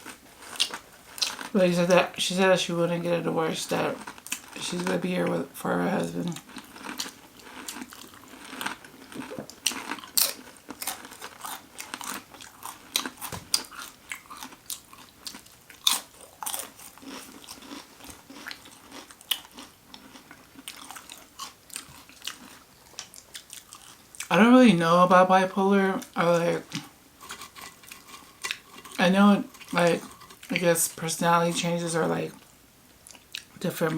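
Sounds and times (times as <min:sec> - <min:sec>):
chewing toasted sandwich: 0:00.0 - 0:02.2, 0:02.8 - 0:24.3, 0:26.0 - 0:33.6
crisp crunches and mouth sounds: 0:00.0 - 0:02.2, 0:03.6 - 0:05.0, 0:06.0 - 0:24.3.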